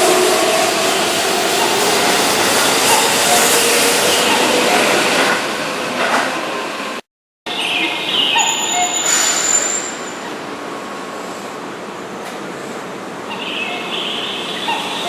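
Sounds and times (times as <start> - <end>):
train rail rumble: 0.0 - 7.0.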